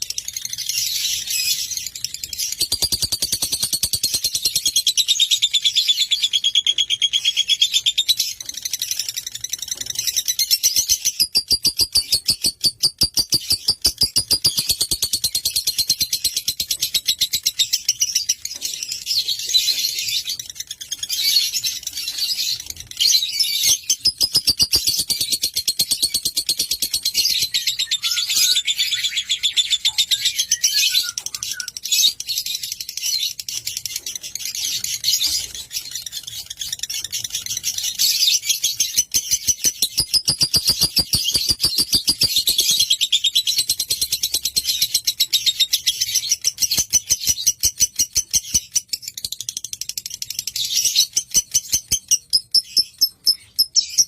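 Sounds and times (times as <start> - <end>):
lovebird chattering trill: 23.7 - 26.7, 39.3 - 43.6.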